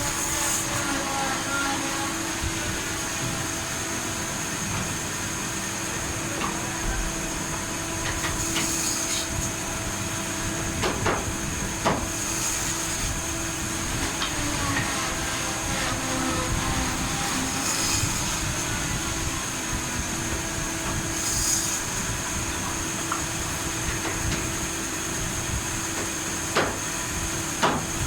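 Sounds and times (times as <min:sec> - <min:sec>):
sharp knocks: 0:27.6 - 0:27.9.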